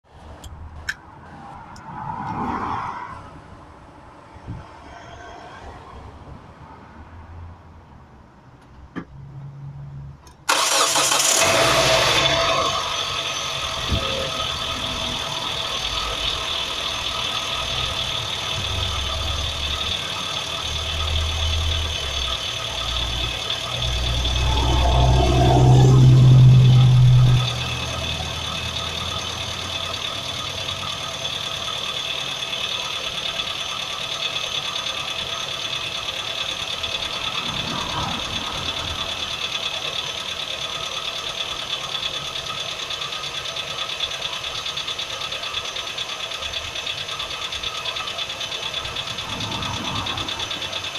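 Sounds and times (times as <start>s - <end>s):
car engine starting: 10.2s - 50.9s
car engine idling: 10.3s - 50.9s.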